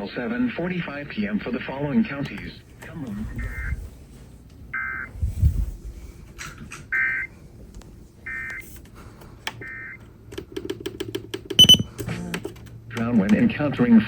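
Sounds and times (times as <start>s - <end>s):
rapid clicks: 10.3s - 13.6s
digital data tones: 11.6s - 11.9s
loud sharp beep: 11.6s - 11.9s.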